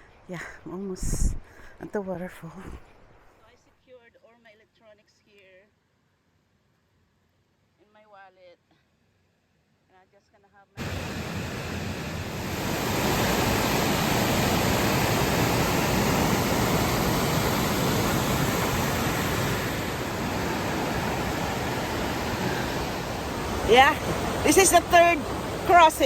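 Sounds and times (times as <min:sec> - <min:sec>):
creek rushing: 0:10.8 - 0:26.0.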